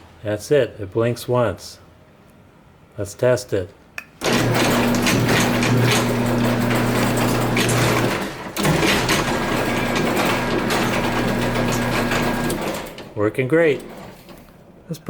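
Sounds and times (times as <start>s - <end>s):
garage door opener motor running: 4.2s - 14.8s.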